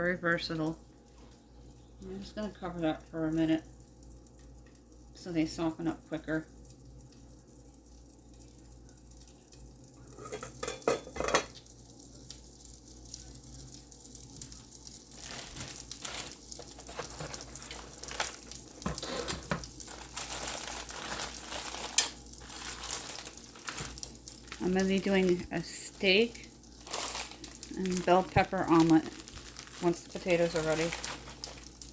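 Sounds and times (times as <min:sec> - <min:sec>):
potatoes sizzling in oil: 0:00.0 - 0:31.9
utensil clattering on skillet: 0:10.1 - 0:11.6.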